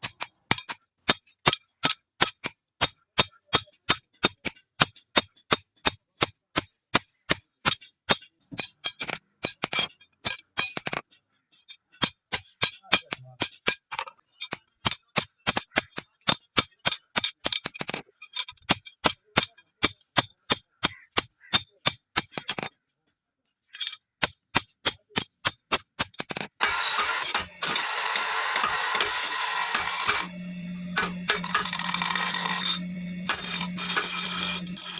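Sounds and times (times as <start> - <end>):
hammer on metal over anvil: 12.0 - 13.8, 24.2 - 30.3, 31.0 - 34.9.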